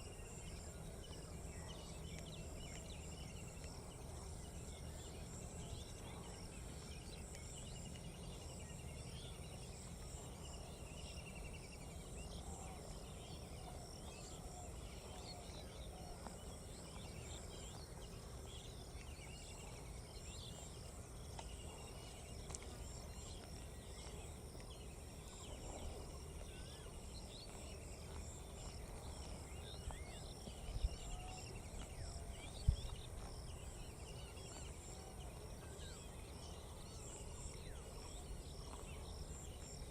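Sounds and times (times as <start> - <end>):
high insect-like hum: 0.0 - 39.9
small birds chirping and trilling: 0.0 - 39.9.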